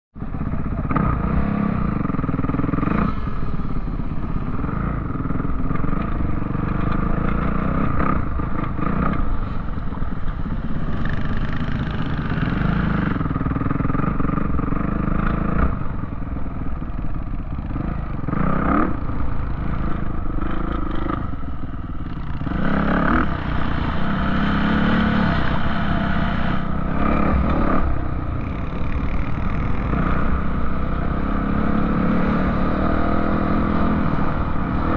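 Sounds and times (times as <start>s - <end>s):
off-road vehicle engine revving: 22.2s - 34.9s.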